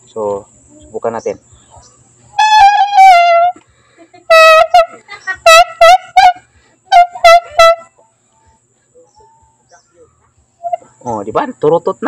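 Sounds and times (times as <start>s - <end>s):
noisemaker horn honks: 2.4s - 3.6s, 4.3s - 8.0s.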